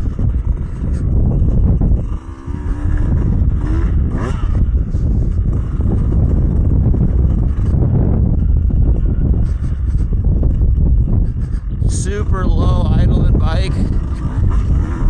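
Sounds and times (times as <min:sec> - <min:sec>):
two-stroke dirt bike engine: 0:00.0 - 0:15.0
wind rush on microphone: 0:00.0 - 0:15.0.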